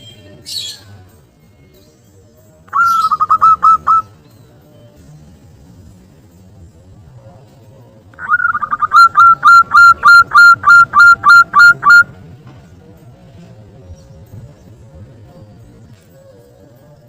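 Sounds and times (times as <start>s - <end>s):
dove cooing: 2.7s - 4.1s, 8.2s - 12.1s
dove stuttering notes: 2.7s - 4.1s, 8.2s - 12.1s.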